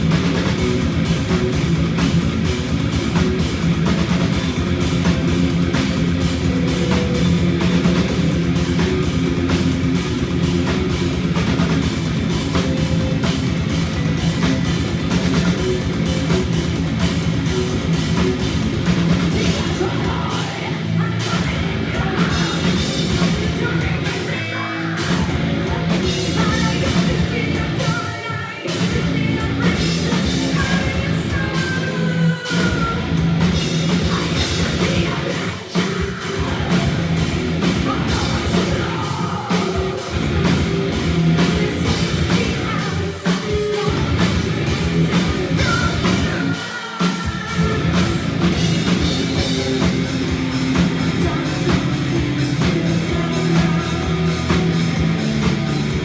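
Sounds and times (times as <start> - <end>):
metal band playing: 0.0 - 56.0
woman singing: 19.3 - 49.7, 50.6 - 54.9.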